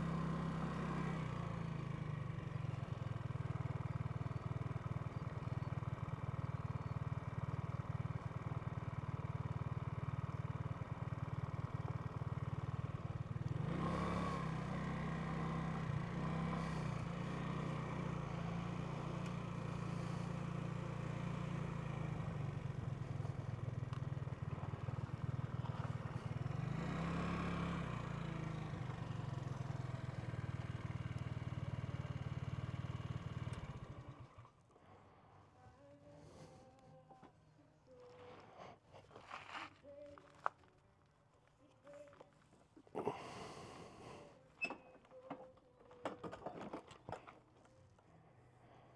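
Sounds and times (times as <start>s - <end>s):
scooter engine running: 0.0s - 35.2s.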